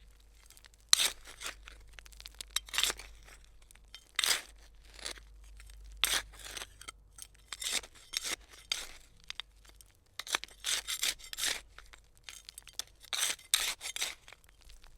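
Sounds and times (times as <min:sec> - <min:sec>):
trowel scraping into soil: 0:00.9 - 0:01.8, 0:02.6 - 0:09.1, 0:10.2 - 0:14.6.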